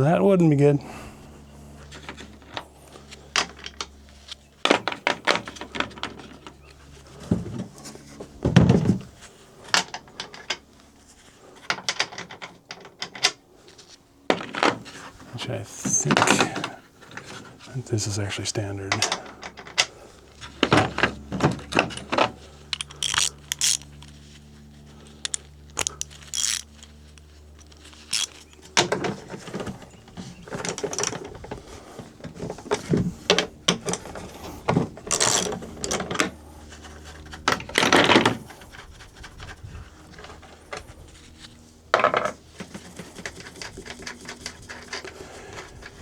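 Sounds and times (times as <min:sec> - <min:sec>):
hand tools clanking on metal: 0:14.3 - 0:23.9.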